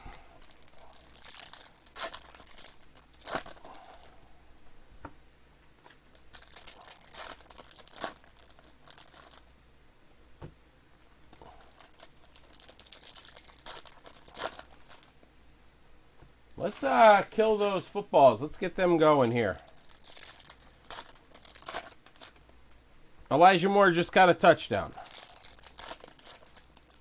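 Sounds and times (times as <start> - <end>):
plastic packaging crinkling and tearing: 0.1 - 4.2, 5.8 - 9.6, 11.0 - 15.2, 16.6 - 22.7, 24.2 - 27.0.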